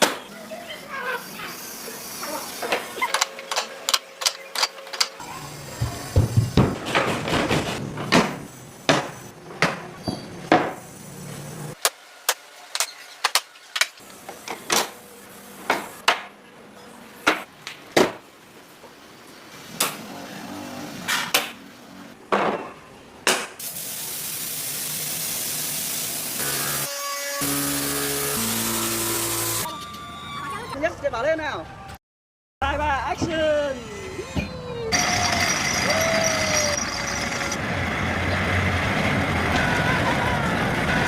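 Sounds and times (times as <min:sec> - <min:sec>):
steady hiss: 0:23.6 - 0:26.5.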